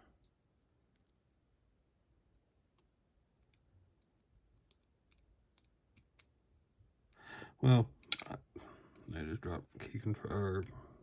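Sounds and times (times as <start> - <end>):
metal tool clicking on lock parts: 8.0 - 8.4.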